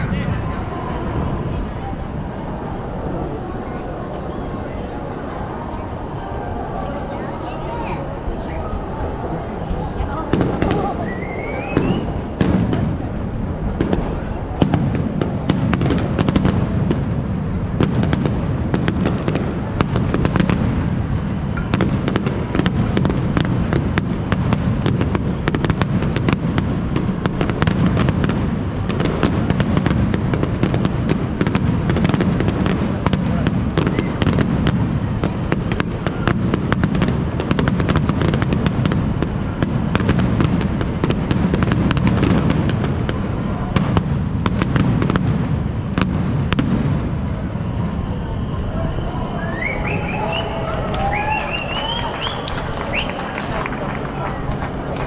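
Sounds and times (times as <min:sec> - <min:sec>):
fireworks exploding: 0:00.0 - 0:55.0.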